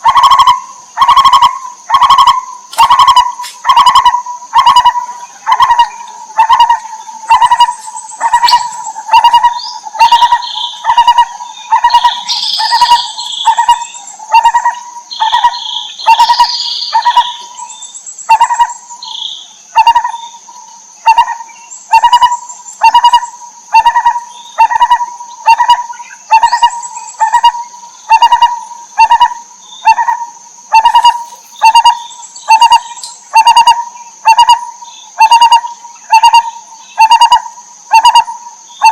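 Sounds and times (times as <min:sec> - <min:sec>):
higher bird chirps: 0:00.0 - 0:38.9.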